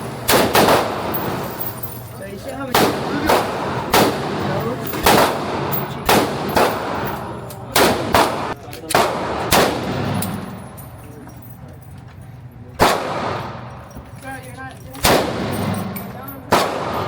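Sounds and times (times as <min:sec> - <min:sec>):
gunshots with ringing tail: 0:00.0 - 0:01.9, 0:02.7 - 0:10.7, 0:12.8 - 0:13.8, 0:15.0 - 0:17.0.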